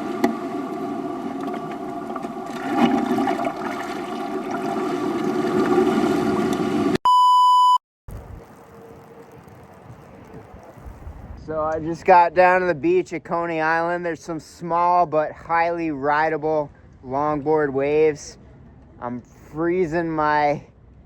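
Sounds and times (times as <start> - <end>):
electronic beep: 7.1 - 7.8.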